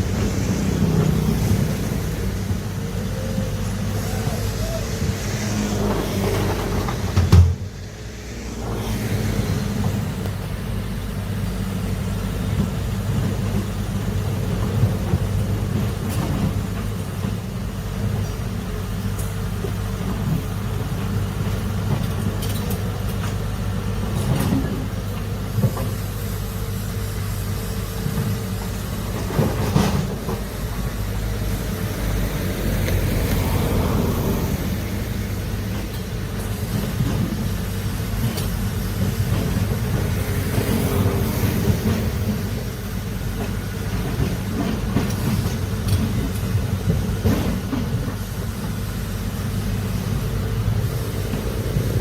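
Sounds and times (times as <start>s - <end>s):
diesel engine under load: 0.0s - 52.0s.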